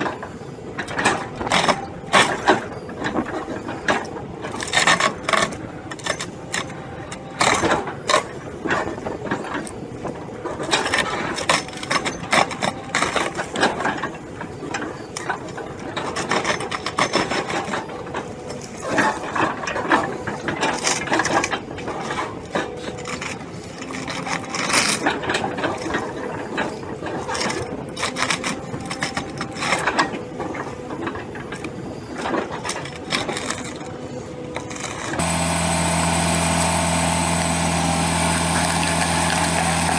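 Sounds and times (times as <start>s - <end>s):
machine cutting into wood: 32.5s - 39.9s.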